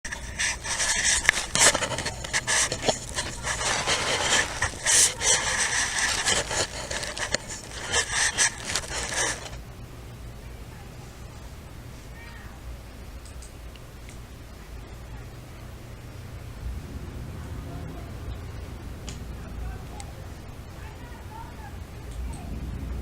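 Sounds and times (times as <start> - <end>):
harsh scraping and rubbing: 0.0 - 9.6
low steady hum: 0.0 - 23.0.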